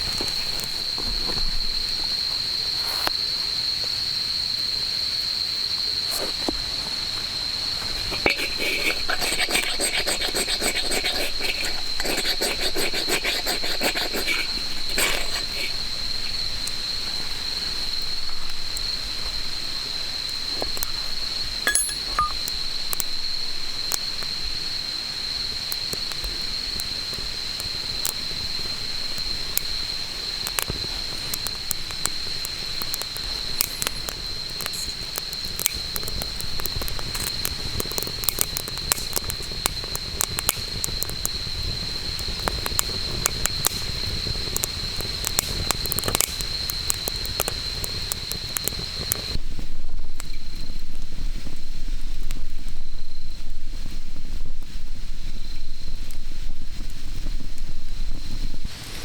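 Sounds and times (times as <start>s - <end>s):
insect trilling: 0.0s - 19.0s, 25.2s - 49.4s
campfire crackling: 0.0s - 59.0s.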